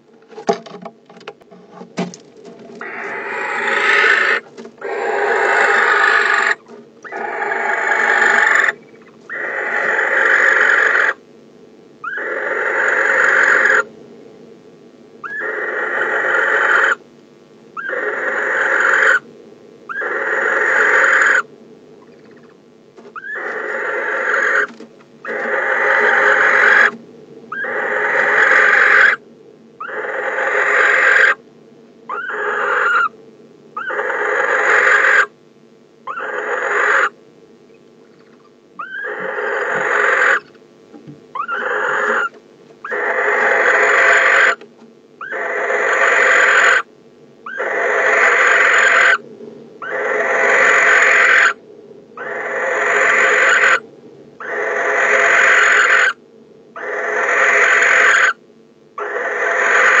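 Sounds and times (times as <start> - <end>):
owl hissing screech calls: 2.8 - 11.2, 12.0 - 13.9, 15.2 - 17.0, 17.8 - 19.3, 19.9 - 22.6, 23.2 - 29.2, 29.8 - 31.4, 32.1 - 33.2, 33.8 - 35.3, 36.0 - 37.2, 38.0 - 40.6, 41.3 - 44.6, 45.2 - 49.2, 49.8 - 51.6, 52.2 - 53.8, 54.4 - 56.2, 56.8 - 58.4, 59.0 - 60.0.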